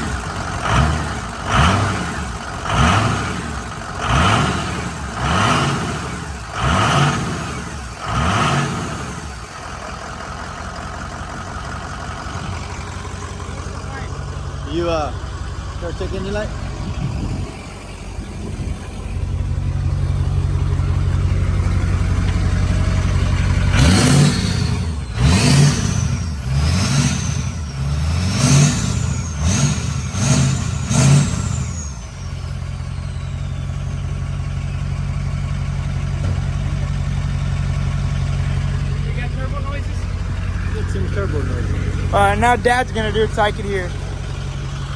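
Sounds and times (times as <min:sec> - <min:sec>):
diesel engine idling and revving: 0:00.0 - 0:44.9
turbo whistling: 0:23.6 - 0:35.2.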